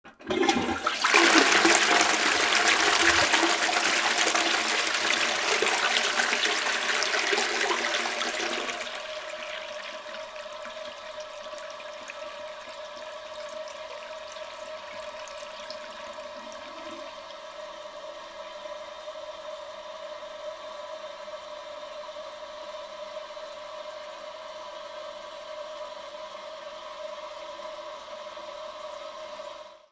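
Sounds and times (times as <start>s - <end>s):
toilet flushing water rush: 0.0s - 18.8s
toilet flush click: 0.1s - 17.7s
cistern refilling: 0.1s - 18.4s.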